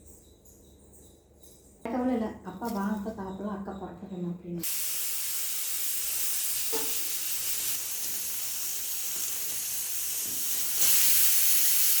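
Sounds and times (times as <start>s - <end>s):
cooking hissing on stove: 4.6s - 12.0s.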